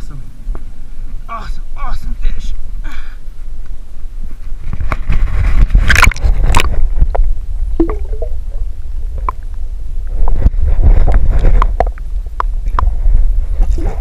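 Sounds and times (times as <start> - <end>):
steady low rumble: 0.0 - 14.0
water splashing and sloshing: 7.8 - 8.7.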